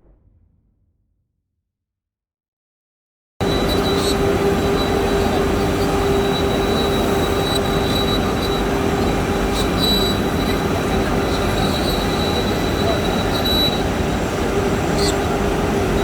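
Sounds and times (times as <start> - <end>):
milling machine cutting metal: 3.4 - 16.0.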